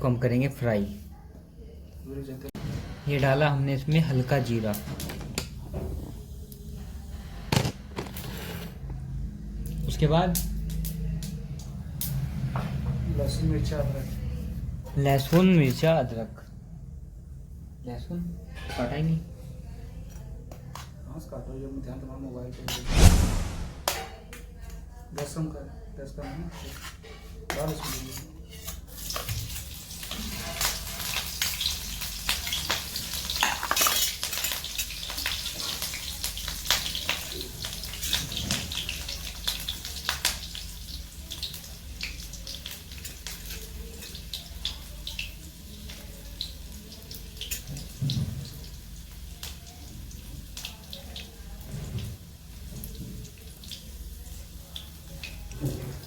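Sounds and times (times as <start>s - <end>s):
food sizzling in hot oil: 28.9s - 55.5s.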